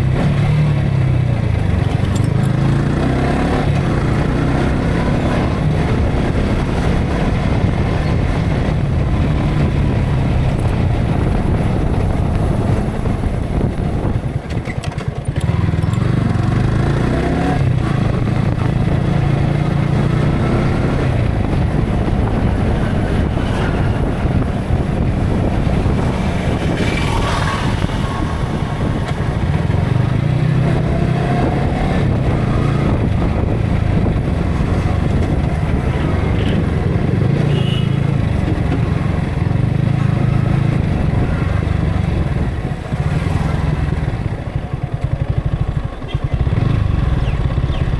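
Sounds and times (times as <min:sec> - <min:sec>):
motorcycle engine running: 0:00.0 - 0:47.9
wind noise on microphone: 0:00.0 - 0:47.9.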